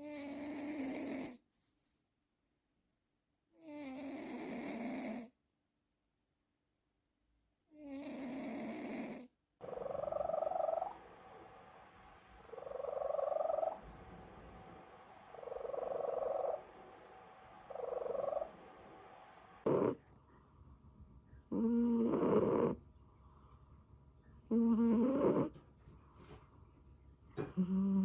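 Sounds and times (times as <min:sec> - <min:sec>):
cat snoring: 0:00.0 - 0:01.4, 0:03.6 - 0:05.4, 0:07.8 - 0:11.5, 0:12.3 - 0:16.9, 0:17.6 - 0:20.1, 0:21.5 - 0:22.8, 0:24.5 - 0:25.6, 0:27.4 - 0:28.0.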